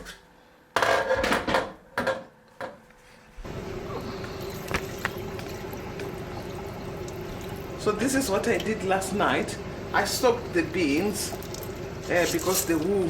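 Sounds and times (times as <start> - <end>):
kitchen clatters and knocks: 0.8 - 2.8
low hum with faint whine: 2.8 - 13.0.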